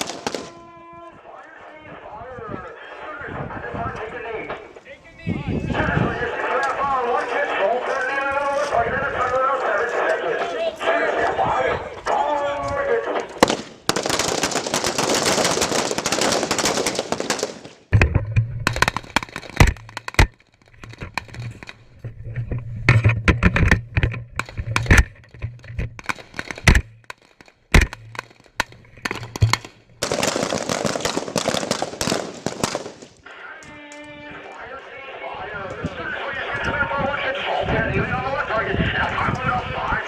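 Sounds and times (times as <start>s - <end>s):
rifle shots: 0.0s - 0.6s, 13.4s - 17.9s, 26.0s - 33.2s.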